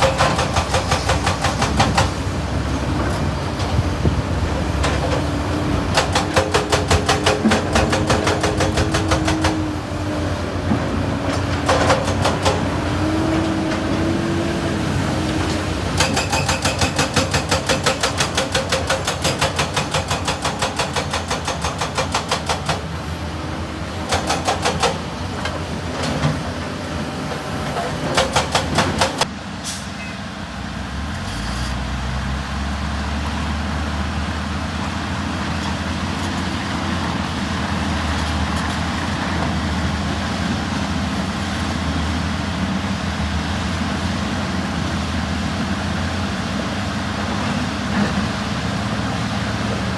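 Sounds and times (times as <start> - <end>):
excavator mechanical clatter: 0.0 - 9.7, 10.6 - 14.1, 15.2 - 23.1, 23.9 - 29.3
diesel engine running: 0.0 - 16.1.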